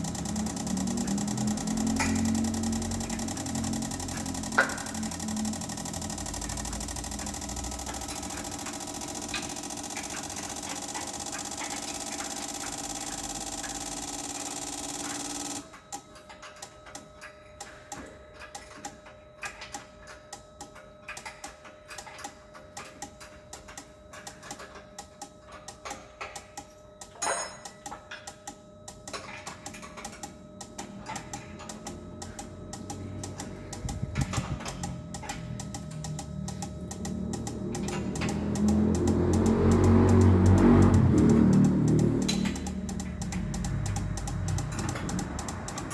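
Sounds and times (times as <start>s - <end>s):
fast irregular ticking: 0.0s - 15.6s, 31.7s - 45.9s
fuel injectors buzzing: 0.0s - 15.7s, 30.6s - 45.9s.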